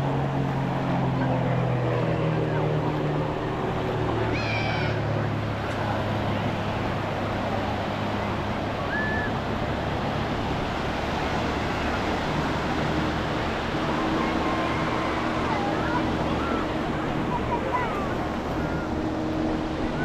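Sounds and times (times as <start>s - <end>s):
ocean surf breaking: 0.0s - 20.0s
high whistle-like tone: 8.9s - 9.3s.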